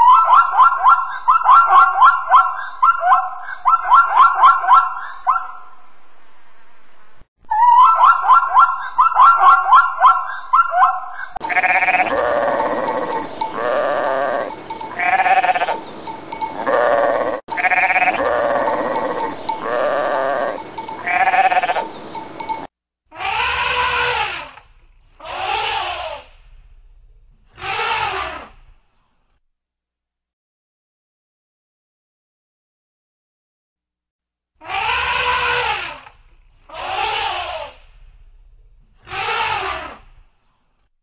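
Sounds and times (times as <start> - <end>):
longer animal calls: 7.5 - 24.6, 25.2 - 26.4, 27.6 - 28.5, 34.6 - 36.1, 36.7 - 37.8, 39.0 - 40.1
fast high bell jingle: 11.4 - 22.7
quick rising chirps: 11.4 - 22.7
sheep bleating: 11.4 - 24.3.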